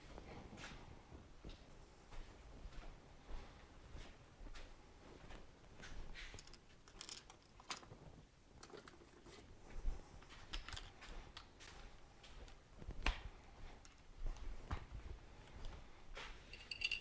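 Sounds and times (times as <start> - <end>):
metal parts clinking: 6.4 - 8.0, 8.6 - 9.4, 10.5 - 11.5, 16.5 - 17.0.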